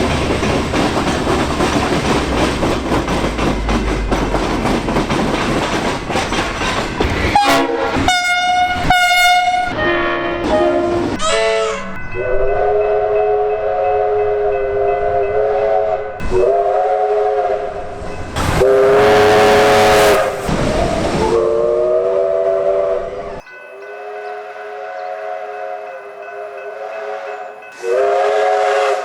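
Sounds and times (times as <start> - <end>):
passing train rush: 0.0 - 29.0
train air horn blasts: 7.3 - 23.4, 24.0 - 29.0.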